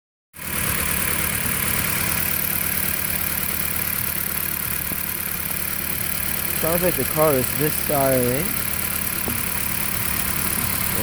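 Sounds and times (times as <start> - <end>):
car engine idling unevenly: 0.4 - 11.0.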